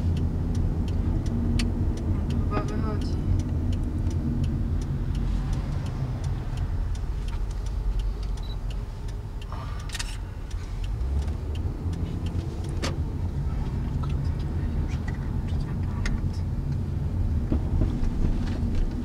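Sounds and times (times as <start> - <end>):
car road and engine rumble: 0.0 - 19.0
faint ticks: 0.1 - 13.0
sharp clicks: 0.1 - 13.1.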